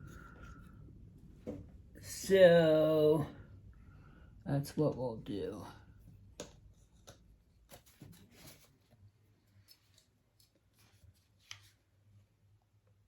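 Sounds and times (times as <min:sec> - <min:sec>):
faint clicks and scrapes: 0:06.4 - 0:11.9.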